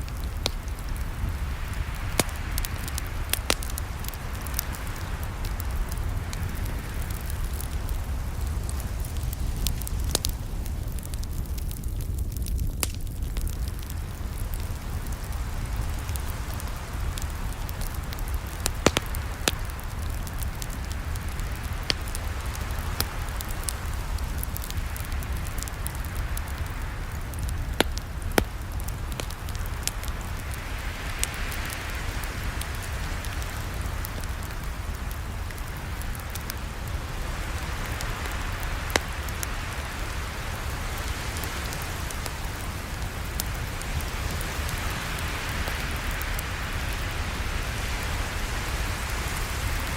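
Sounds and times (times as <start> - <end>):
campfire crackling and popping: 0.0 - 49.9.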